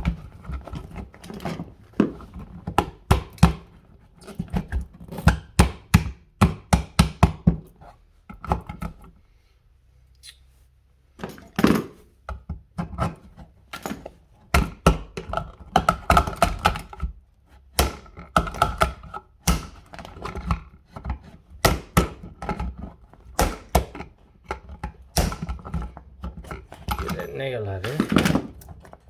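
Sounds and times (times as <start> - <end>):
hand tools knocking and tapping: 23.4 - 28.9.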